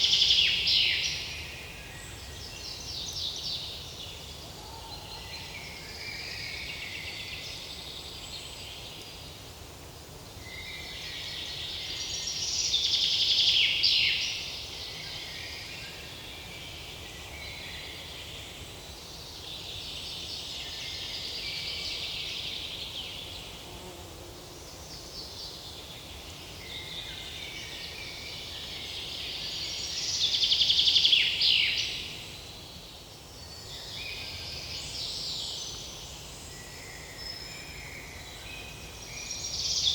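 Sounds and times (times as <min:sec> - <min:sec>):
insects buzzing: 0:22.3 - 0:34.1.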